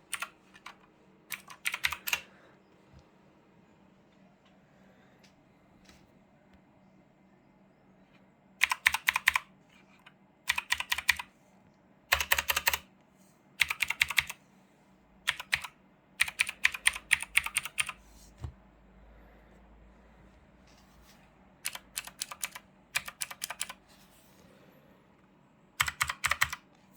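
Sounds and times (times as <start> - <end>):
clicky mechanical keyboard typing: 0.1 - 2.3, 8.6 - 9.5, 10.5 - 11.3, 12.1 - 12.9, 13.6 - 14.4, 15.3 - 18.0, 21.6 - 23.8, 25.8 - 26.7.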